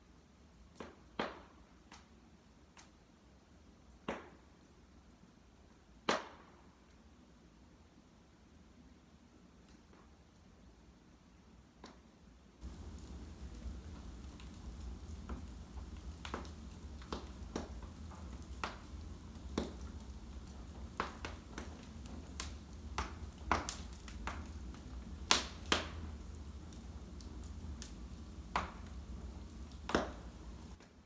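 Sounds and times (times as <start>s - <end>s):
low steady rumble: 12.6s - 30.8s
wood fire crackling and popping: 12.6s - 30.8s.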